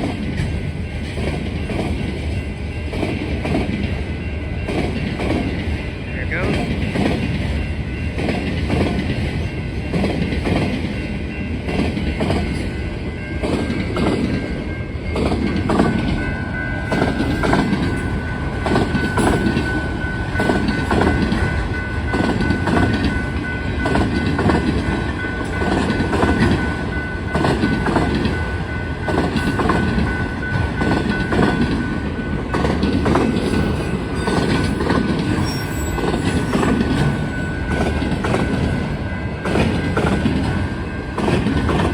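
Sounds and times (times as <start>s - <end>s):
train cars rumbling past: 0.0s - 41.9s
wheels clacking over rail joints: 13.4s - 41.9s
high-pitched wheel squeal: 35.4s - 36.7s.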